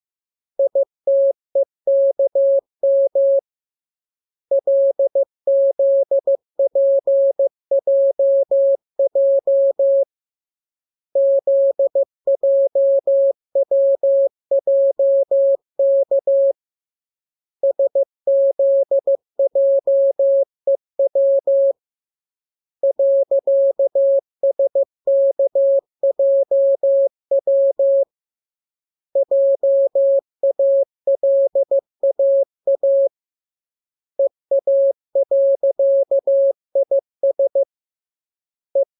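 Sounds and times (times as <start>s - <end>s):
morse code tone: 34.2s - 37.6s.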